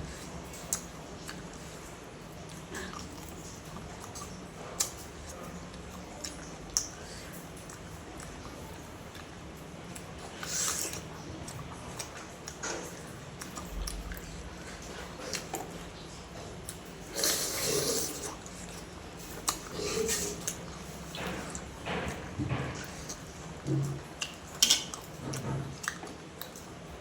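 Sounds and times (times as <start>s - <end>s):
person chewing: 2.4s - 7.0s, 9.9s - 22.2s, 22.8s - 26.7s.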